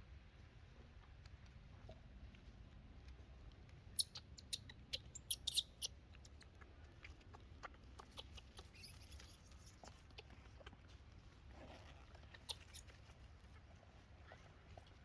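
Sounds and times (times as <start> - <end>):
monkey squeaking: 4.0 - 6.0, 8.1 - 10.0, 12.4 - 12.9.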